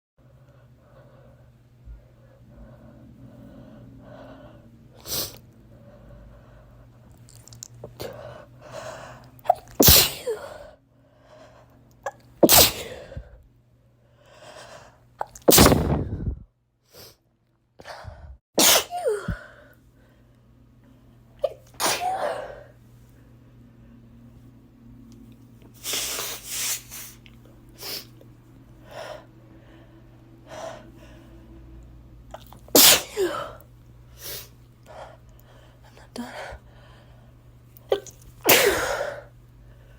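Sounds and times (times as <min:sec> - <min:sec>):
person breathing: 0:00.4 - 0:07.0, 0:17.8 - 0:18.4, 0:34.8 - 0:37.4
person sneezing loudly: 0:09.4 - 0:10.6, 0:12.4 - 0:13.2, 0:15.3 - 0:16.0, 0:18.6 - 0:19.5, 0:21.4 - 0:22.6, 0:32.4 - 0:33.6, 0:37.9 - 0:39.2.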